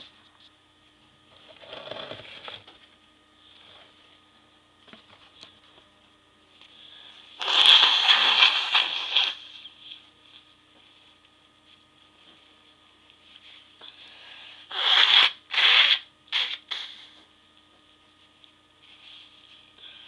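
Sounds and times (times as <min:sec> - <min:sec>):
faint breath: 0:13.8 - 0:14.7.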